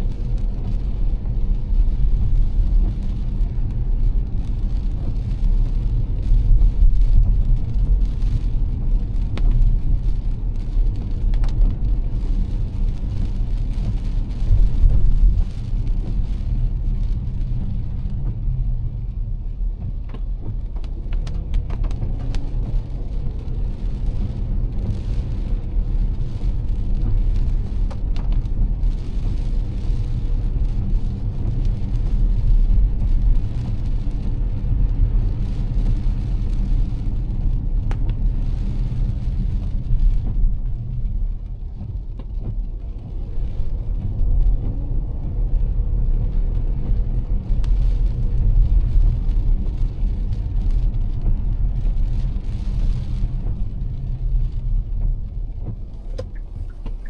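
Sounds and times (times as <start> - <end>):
engine and road rumble: 0.0 - 57.0
wet tyres hissing: 55.6 - 57.0.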